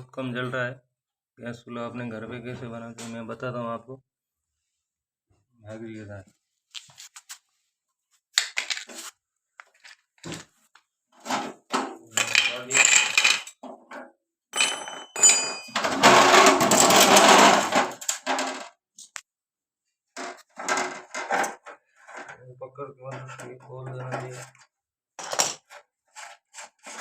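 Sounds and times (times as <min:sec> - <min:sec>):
metal kitchen items clattering: 0:11.2 - 0:18.7, 0:20.2 - 0:22.4, 0:25.2 - 0:25.8
ringing metal clink: 0:14.6 - 0:16.0.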